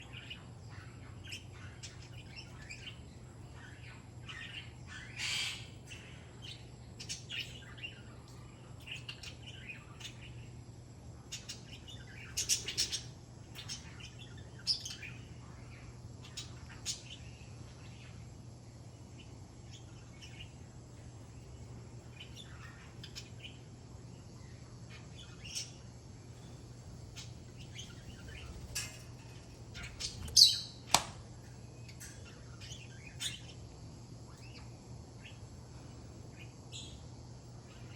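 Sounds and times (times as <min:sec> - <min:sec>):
parrot chirps clicks and squeaks: 0:27.2 - 0:31.3, 0:31.9 - 0:33.6.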